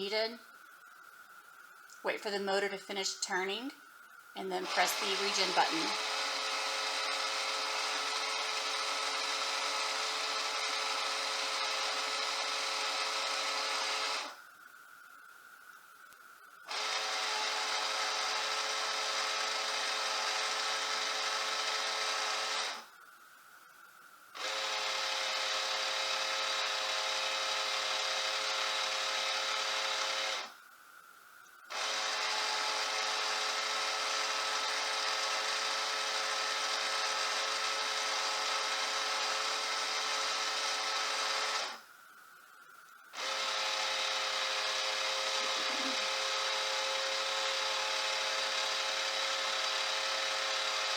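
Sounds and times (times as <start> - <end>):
valve drive motor whining: 4.6 - 14.4, 16.7 - 22.9, 31.7 - 41.8, 43.2 - 50.9.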